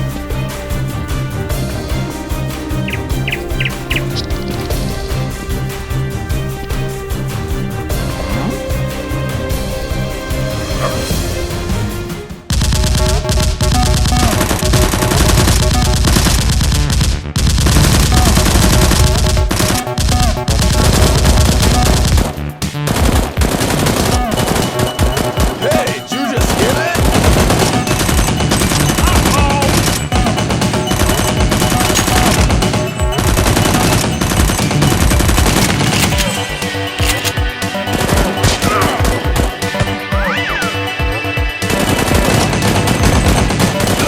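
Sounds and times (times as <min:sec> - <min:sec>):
action background music: 0:00.0 - 0:44.0
machine-gun fire: 0:12.5 - 0:36.4, 0:41.6 - 0:44.0.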